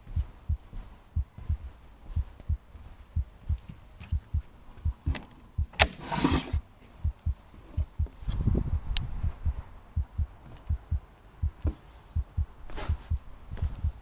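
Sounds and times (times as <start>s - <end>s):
low rhythmic thumping: 0.0s - 5.8s, 7.0s - 14.0s.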